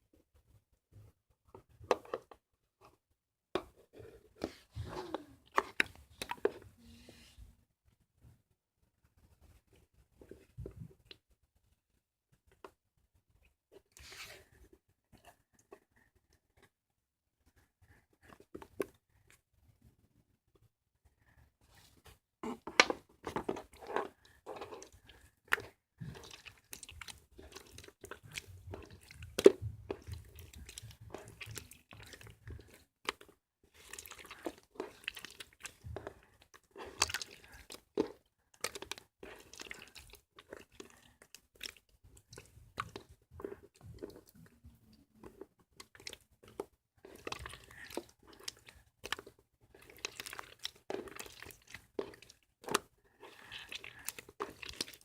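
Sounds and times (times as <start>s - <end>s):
slime crackling and squelching: 21.7s - 44.4s, 45.2s - 55.0s.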